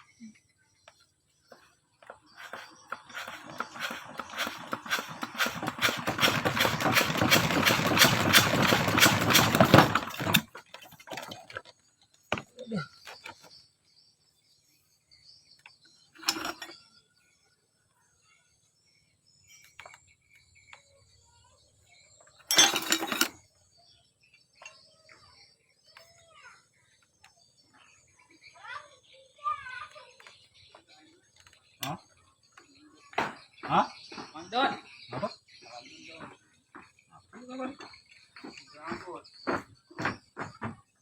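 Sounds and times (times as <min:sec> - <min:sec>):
machine clattering: 0:02.4 - 0:11.6, 0:16.2 - 0:16.7, 0:22.5 - 0:23.4.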